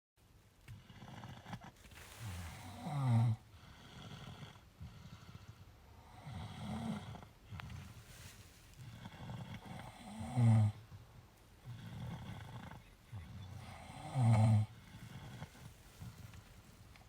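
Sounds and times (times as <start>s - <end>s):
quiet breathing: 0.6s - 17.0s
person snoring: 0.8s - 5.4s, 8.8s - 10.8s, 11.7s - 15.6s.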